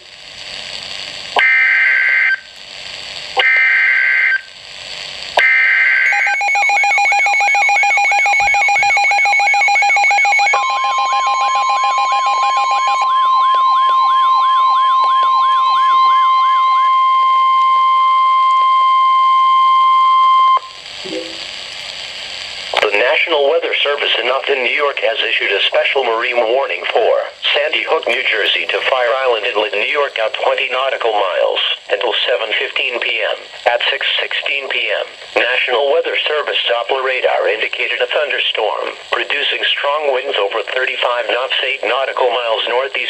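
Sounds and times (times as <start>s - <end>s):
warbling alarm tones: 5.4s - 21.5s
screeching data bursts: 5.5s - 17.2s
steady high alert tone: 6.1s - 13.0s, 21.1s - 21.6s.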